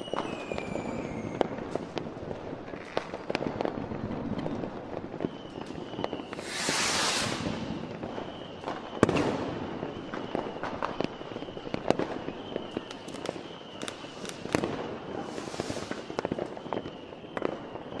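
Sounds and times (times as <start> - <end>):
fireworks bangs and pops: 0.0 - 18.0
fireworks hissing burst: 6.2 - 8.4, 15.1 - 16.4.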